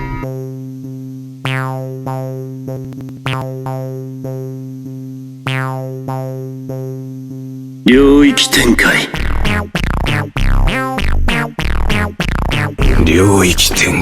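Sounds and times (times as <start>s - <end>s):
struck synth notes: 7.9s - 14.0s.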